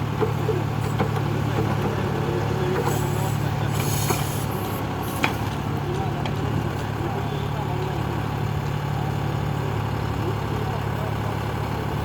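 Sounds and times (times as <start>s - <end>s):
tractor diesel engine running: 0.0s - 12.0s
brief hiss: 2.9s - 5.4s.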